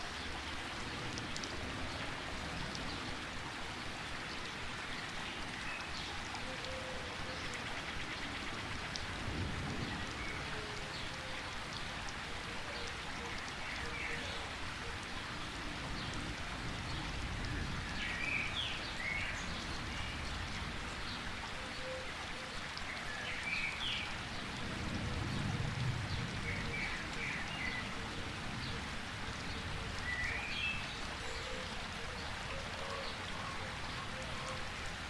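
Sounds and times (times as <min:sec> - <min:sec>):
steady rain falling: 0:00.0 - 0:35.0.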